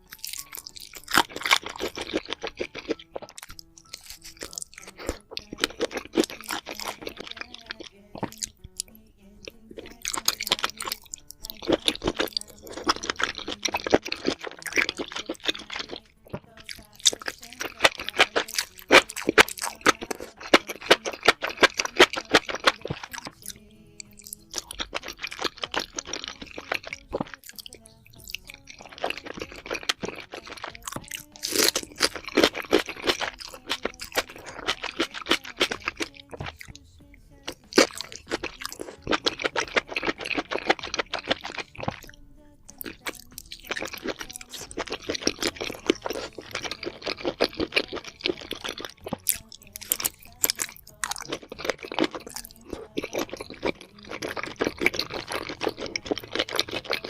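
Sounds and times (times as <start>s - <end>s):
close chewing and crunching: 0.0s - 57.0s.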